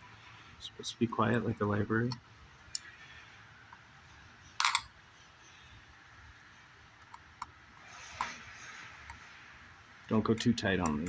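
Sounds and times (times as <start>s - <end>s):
metal parts and tools handled: 4.6s - 4.9s.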